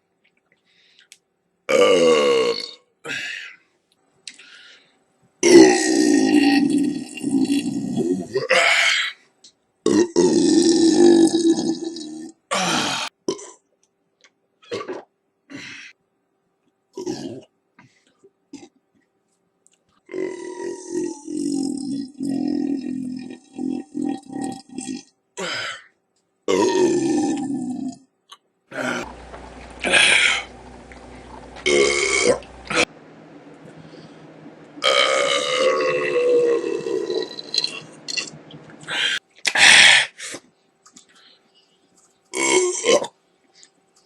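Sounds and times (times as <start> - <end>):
faint steady hum: 0.0 - 44.0
loud belches: 1.7 - 2.8, 5.4 - 8.8, 9.9 - 13.6, 26.5 - 28.0, 28.7 - 30.6, 31.3 - 32.9, 34.8 - 38.3, 42.4 - 43.1
person burping: 1.7 - 3.2, 5.4 - 9.0, 9.8 - 13.6, 14.7 - 15.1, 17.0 - 17.5, 20.1 - 25.8, 26.5 - 28.0, 28.7 - 29.2, 29.8 - 30.5, 31.6 - 32.9, 34.8 - 38.3, 42.4 - 43.2.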